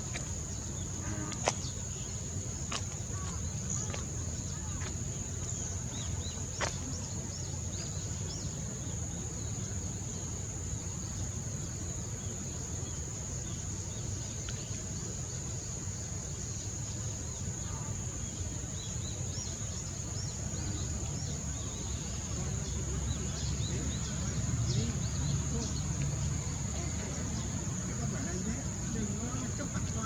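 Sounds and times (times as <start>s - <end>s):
small birds chirping: 0.0s - 9.7s, 17.2s - 30.0s.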